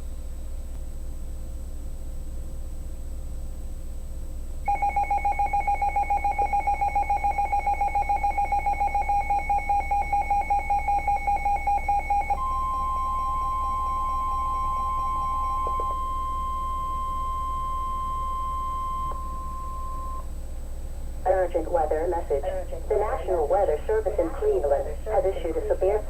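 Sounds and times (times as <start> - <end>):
steady warning alarm tone: 4.6 - 20.5
pulsing two-tone alert signal: 4.7 - 20.2
low hum: 4.7 - 26.0.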